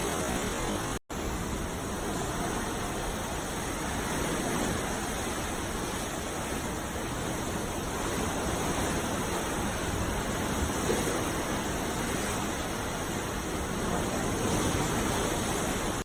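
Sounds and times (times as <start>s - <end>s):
sea waves washing on shore: 0.0s - 16.0s.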